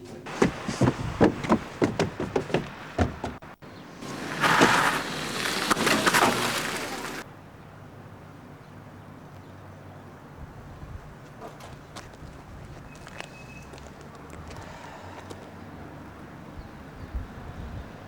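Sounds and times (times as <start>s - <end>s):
knocks and thumps: 0.3s - 7.2s.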